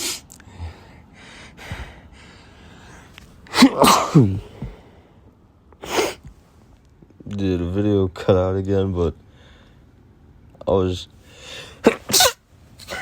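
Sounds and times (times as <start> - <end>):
breathy inhales: 0.4 - 3.2, 9.3 - 9.8, 11.3 - 11.8
person sneezing: 3.5 - 4.8, 5.8 - 6.3, 11.8 - 13.0.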